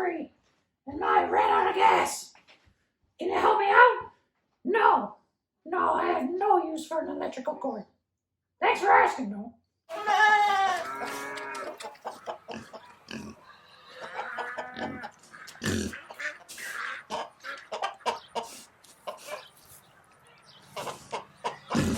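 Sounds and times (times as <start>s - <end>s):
farm animal calling: 9.9s - 21.9s.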